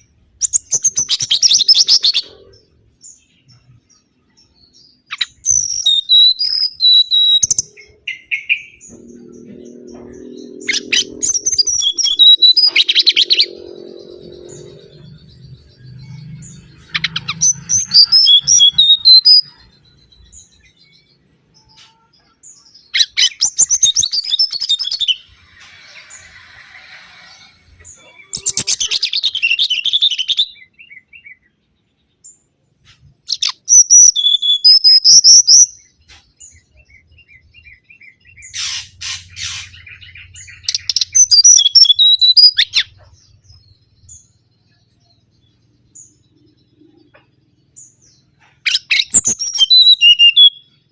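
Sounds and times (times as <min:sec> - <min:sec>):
bird whistling and warbling: 0:00.4 - 0:02.8, 0:05.1 - 0:19.7, 0:22.9 - 0:31.4, 0:33.3 - 0:35.8, 0:38.1 - 0:43.2, 0:48.4 - 0:50.8
harsh rattling bird call: 0:38.3 - 0:43.0.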